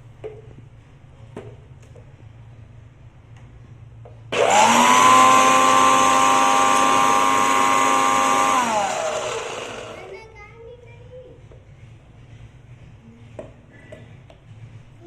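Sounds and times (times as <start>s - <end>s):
mixer grinder motor whining: 4.3s - 10.2s.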